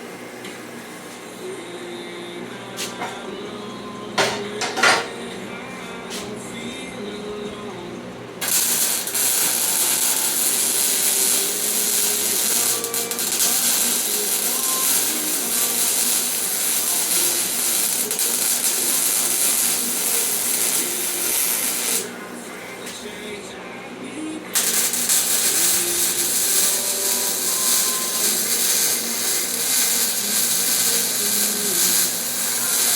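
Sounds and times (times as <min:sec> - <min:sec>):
welding arc crackling: 0:08.4 - 0:22.2, 0:24.5 - 0:32.9.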